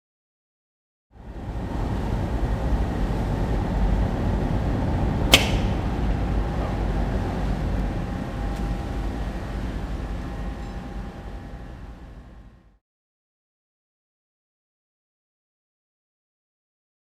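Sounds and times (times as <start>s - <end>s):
line-throwing gun firing pop: 5.3s - 5.8s.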